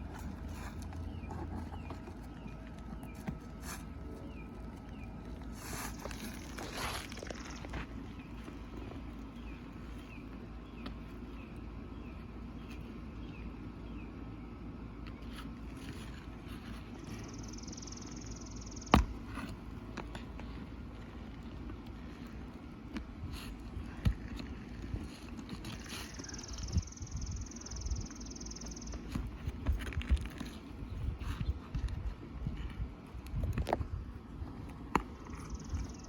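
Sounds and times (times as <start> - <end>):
bird chirping: 0.0 - 14.6, 16.5 - 19.2, 25.1 - 29.5, 35.2 - 36.0.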